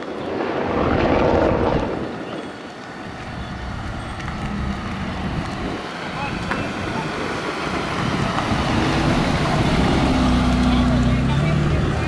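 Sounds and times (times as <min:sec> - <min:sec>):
car engine driving past: 0:03.0 - 0:12.0.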